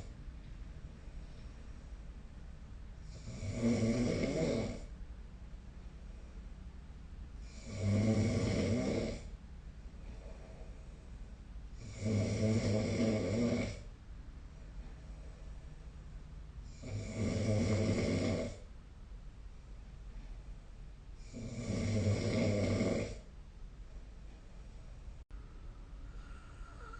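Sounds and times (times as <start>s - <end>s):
person snoring: 3.0s - 4.9s, 7.4s - 9.4s, 11.8s - 13.9s, 16.7s - 18.6s, 21.2s - 23.2s, 26.1s - 26.9s.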